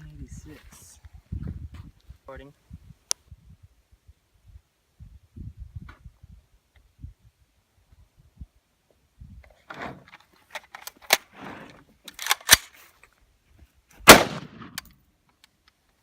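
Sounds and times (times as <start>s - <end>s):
gun handling clicks and rustles: 9.4s - 13.3s, 13.9s - 16.0s
rifle gunshots: 14.0s - 14.8s.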